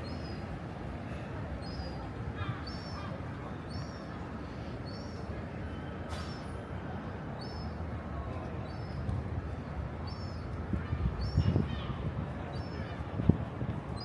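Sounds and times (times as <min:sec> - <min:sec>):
low city background noise: 0:00.0 - 0:14.0.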